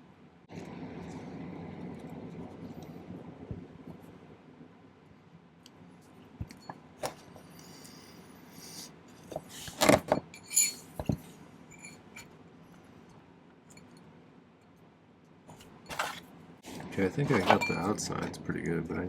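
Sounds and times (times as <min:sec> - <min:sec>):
metal tools and ring clinking: 0:10.1 - 0:12.3, 0:17.3 - 0:18.0.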